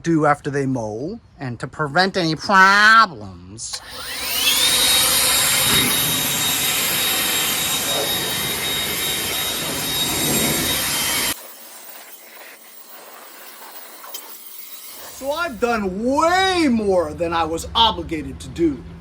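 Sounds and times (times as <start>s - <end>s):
blower whining and rushing air: 3.7s - 17.8s.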